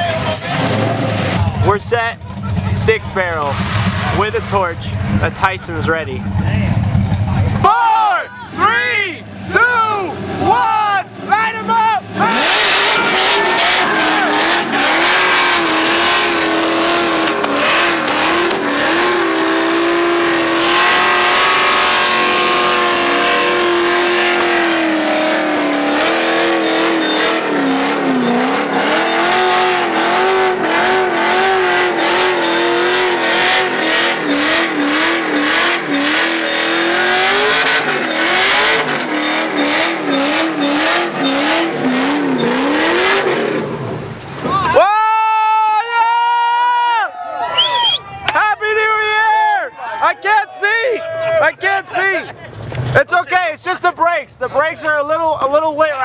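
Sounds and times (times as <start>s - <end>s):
engine revving: 0.0s - 7.8s, 8.5s - 44.5s
tyres squealing: 10.4s - 43.4s
sharp cracks: 13.8s - 21.8s.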